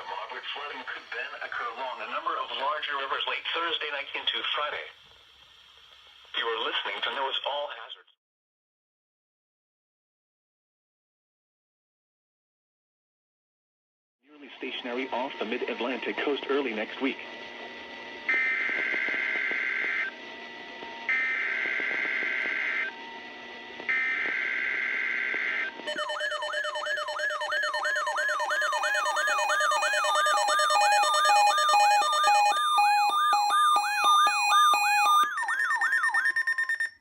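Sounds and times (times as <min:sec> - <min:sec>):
buzzy digital data bursts: 0:25.9 - 0:35.3
electronic alert tone warbling: 0:25.9 - 0:37.0.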